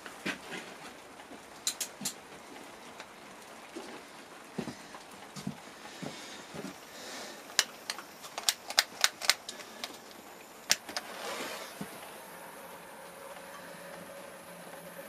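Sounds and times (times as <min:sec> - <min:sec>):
torch flame burning: 0:00.0 - 0:15.0
blowtorch igniter clicking: 0:07.5 - 0:12.1.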